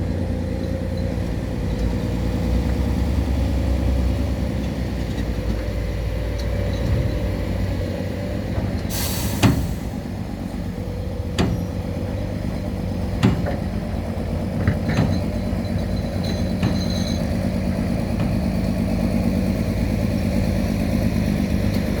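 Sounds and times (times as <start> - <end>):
diesel engine running: 0.0 - 22.0
sharp knocks: 11.3 - 15.5.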